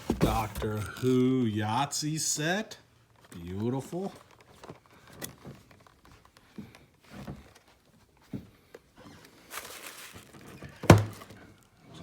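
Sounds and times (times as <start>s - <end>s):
light knocks and thumps: 0.0s - 0.8s
packaging rustle: 3.1s - 8.0s, 9.0s - 11.8s.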